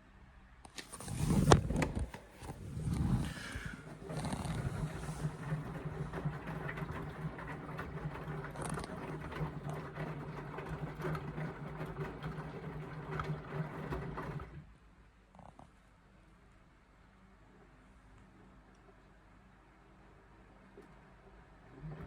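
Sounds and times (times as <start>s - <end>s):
washing machine motor humming: 1.0s - 14.7s, 21.6s - 22.0s
laundry clattering in drum: 3.0s - 14.6s.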